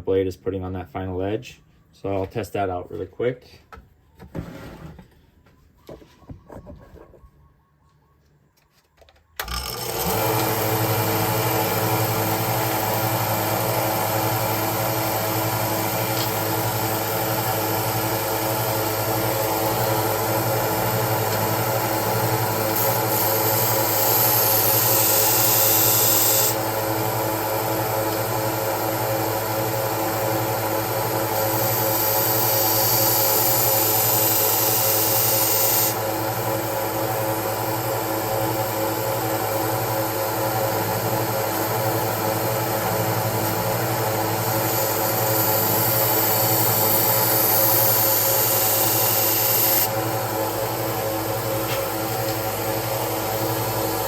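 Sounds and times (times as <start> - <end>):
belt sander running: 9.4 - 54.0
knife grinding on sander belt: 9.6 - 27.2, 31.4 - 36.1.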